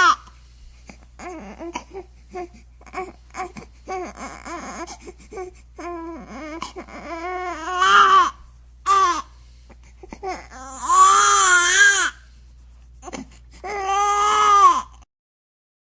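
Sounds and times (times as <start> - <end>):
infant crying: 0.0 - 0.3, 1.2 - 9.3, 10.1 - 12.2, 13.0 - 15.0.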